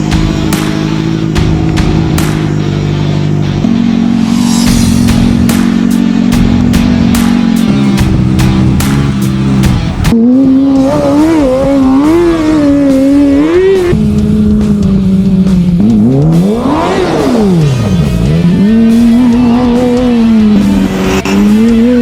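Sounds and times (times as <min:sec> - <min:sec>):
kart engine at high revs: 0:05.0 - 0:22.0.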